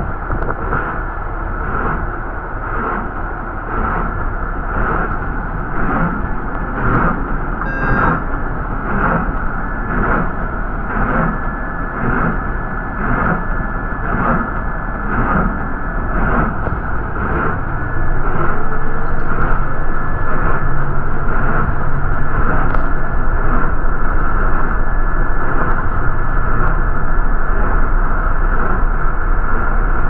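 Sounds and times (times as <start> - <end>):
bus engine and road noise: 0.0 - 30.0
short electronic beep: 7.6 - 8.6
thin high tone: 7.6 - 15.0.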